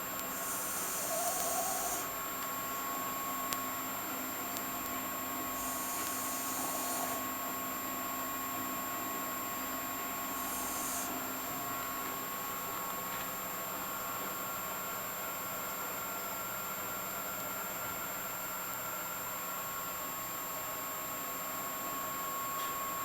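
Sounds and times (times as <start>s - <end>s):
dog snoring: 0.3s - 2.2s, 5.3s - 7.8s, 9.3s - 11.7s.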